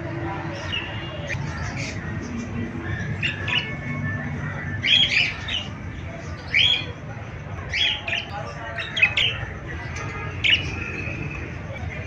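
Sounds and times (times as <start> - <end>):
parrots squawking: 0.6 - 7.0.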